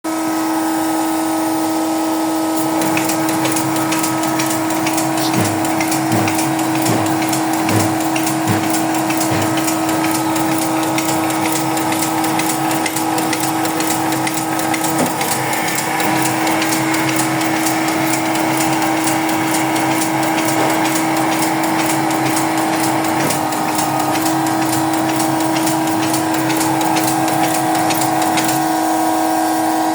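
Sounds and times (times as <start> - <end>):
machine humming and clicking: 2.5 - 29.4
low knocks: 2.8 - 11.5.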